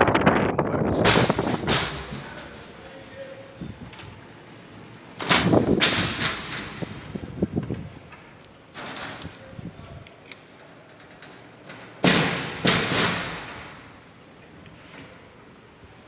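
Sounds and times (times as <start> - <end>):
loud thumps: 0.9 - 2.4.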